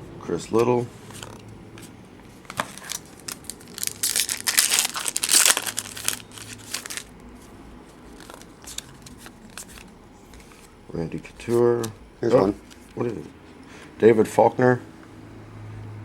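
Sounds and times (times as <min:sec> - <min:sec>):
wrapper crinkling and tearing: 0:02.6 - 0:07.1, 0:08.1 - 0:09.9.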